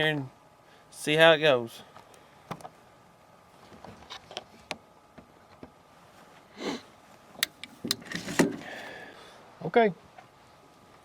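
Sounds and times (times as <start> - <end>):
person sniffing: 6.5 - 6.9.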